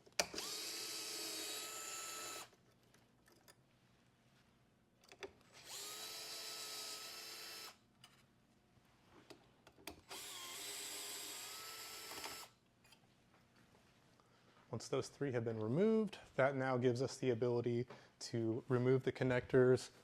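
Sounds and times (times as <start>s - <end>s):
electric screwdriver motor whining: 0.2s - 2.5s, 5.5s - 7.8s, 10.1s - 12.6s.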